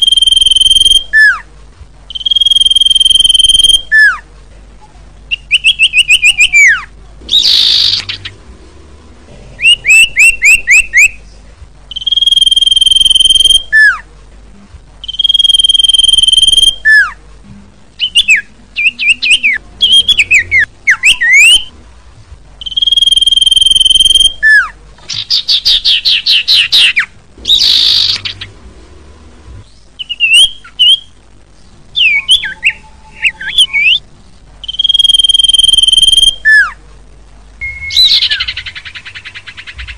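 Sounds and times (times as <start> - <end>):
bird singing whistled phrases: 0.0 - 1.4, 2.1 - 4.2, 5.3 - 8.3, 9.6 - 11.2, 11.9 - 14.0, 15.0 - 17.2, 18.0 - 21.7, 22.6 - 28.4, 30.0 - 31.1, 32.0 - 34.0, 34.6 - 36.8, 37.6 - 39.2.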